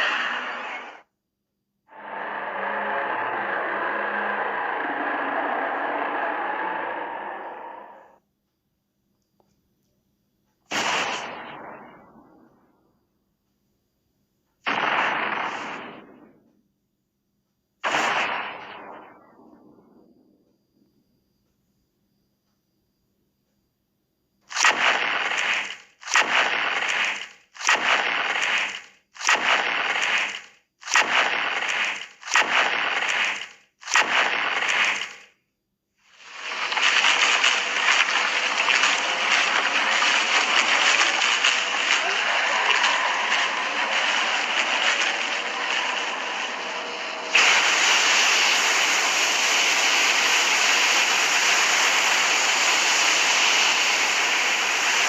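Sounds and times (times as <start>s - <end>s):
explosive sound effect blasts: 10.7s - 12.6s, 14.7s - 16.5s, 17.8s - 19.9s, 24.5s - 35.3s, 36.2s - 54.8s
rushing crashing bursts: 24.6s - 35.3s, 36.1s - 55.0s
steady rushing noise: 36.1s - 55.0s.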